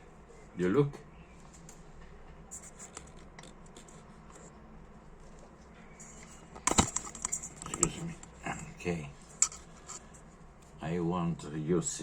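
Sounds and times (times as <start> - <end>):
screwdriver scratching and ticking: 6.0 - 8.4, 9.4 - 10.1.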